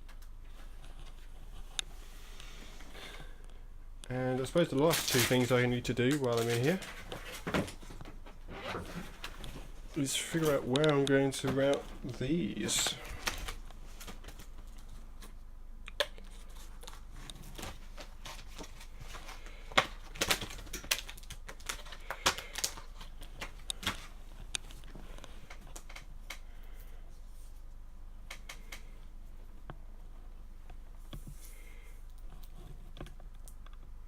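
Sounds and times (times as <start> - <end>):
steady low hum: 0.0 - 34.0
clicks of cables and plastic parts: 10.3 - 12.0.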